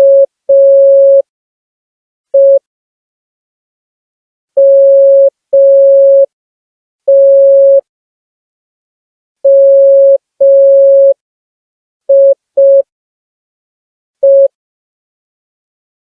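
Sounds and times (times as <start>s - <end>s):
morse code beeps: 0.0s - 1.2s, 2.4s - 2.6s, 4.6s - 6.3s, 7.1s - 7.8s, 14.2s - 14.5s.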